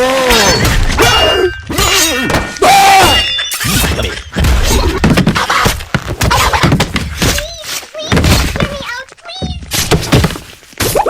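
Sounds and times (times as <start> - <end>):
thuds and crashes: 0.0 - 11.0
something shattering: 0.1 - 5.8.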